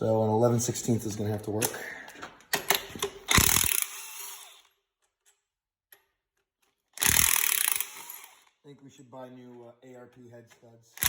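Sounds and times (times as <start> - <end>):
metal-on-metal tool noise: 2.5 - 5.4, 7.0 - 8.6
socket wrench ratchet clicks: 2.7 - 4.5, 7.0 - 8.5.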